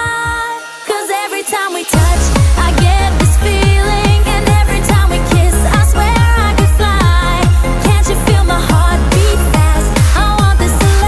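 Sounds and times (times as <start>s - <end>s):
kick drum: 0.0s - 0.6s, 2.0s - 11.0s
synth melody: 0.1s - 11.0s.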